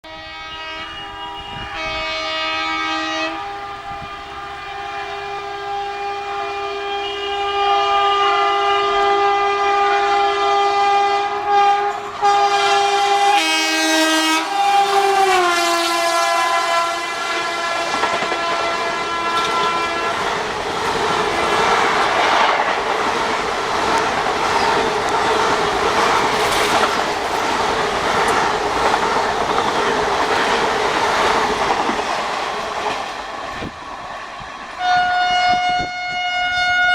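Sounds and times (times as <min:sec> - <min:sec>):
locomotive two-tone horn: 0:00.0 - 0:27.1, 0:34.8 - 0:36.9
train wheels clattering over rails: 0:17.4 - 0:34.8.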